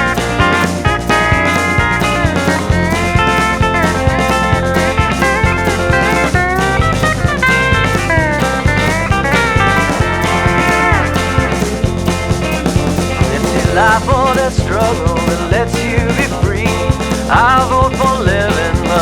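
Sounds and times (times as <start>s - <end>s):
electric guitar solo: 0.0s - 12.6s
bass: 0.0s - 19.0s
drums: 0.0s - 19.0s.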